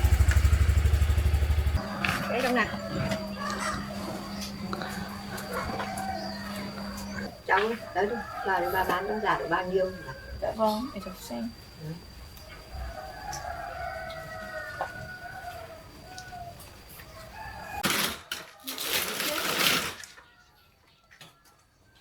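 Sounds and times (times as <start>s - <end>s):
rooster crowing: 0.0s - 10.9s, 12.7s - 17.8s.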